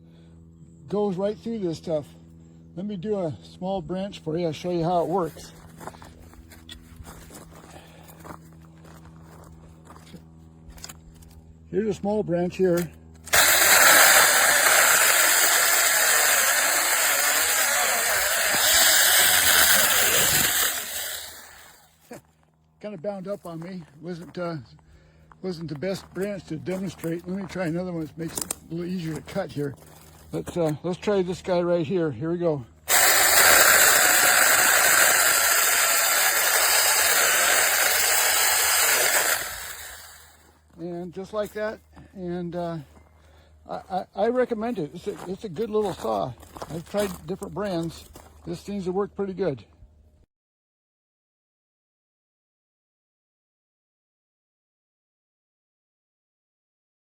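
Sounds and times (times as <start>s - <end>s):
electric chainsaw cutting branch: 12.8s - 22.1s, 32.9s - 40.5s.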